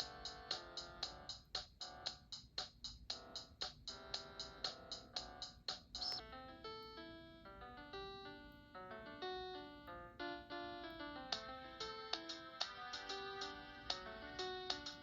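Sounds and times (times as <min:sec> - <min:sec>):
synthesised ringtone tune: 0:06.0 - 0:15.0.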